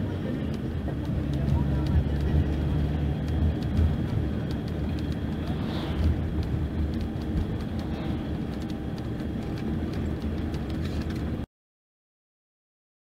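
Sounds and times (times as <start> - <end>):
diesel coach engine running: 0.0 - 11.4.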